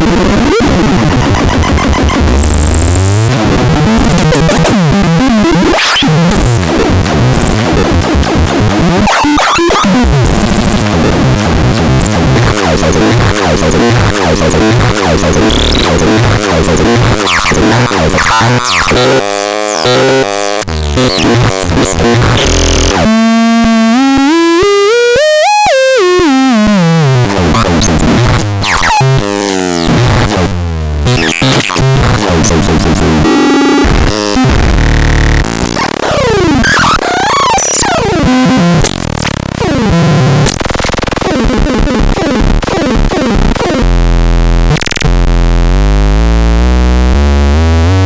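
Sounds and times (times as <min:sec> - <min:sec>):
harsh noisy synthesizer textures: 0:00.0 - 0:48.0
buzzy gliding synthesizer tone: 0:04.0 - 0:24.0.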